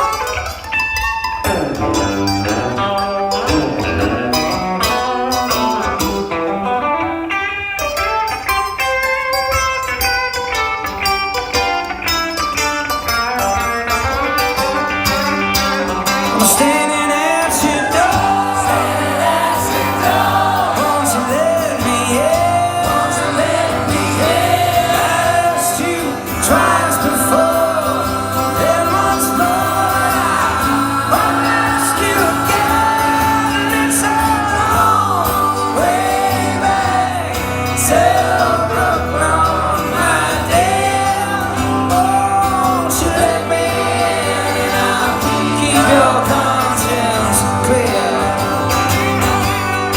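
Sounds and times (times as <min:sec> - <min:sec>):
live band playing: 0:00.0 - 0:49.9
lead vocal singing: 0:16.0 - 0:49.9.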